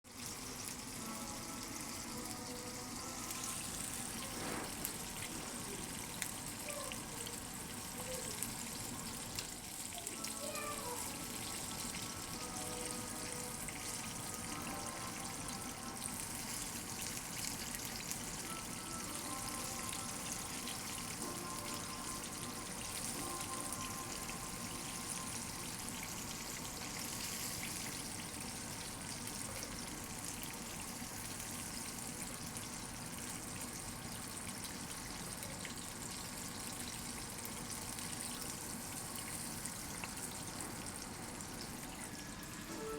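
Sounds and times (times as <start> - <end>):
quiet music: 0.1 - 6.5, 7.8 - 31.5, 39.4 - 42.9
chicken sizzling in hot oil: 0.1 - 42.9.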